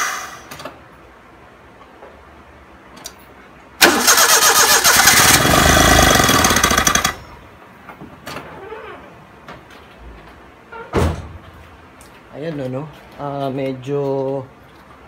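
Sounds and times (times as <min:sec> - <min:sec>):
starter motor cranking: 0:03.8 - 0:07.3.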